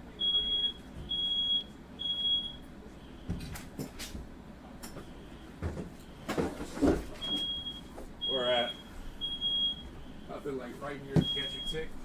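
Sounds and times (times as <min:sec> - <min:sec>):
smoke alarm beeping: 0:00.2 - 0:02.6, 0:07.2 - 0:10.1, 0:11.1 - 0:11.9.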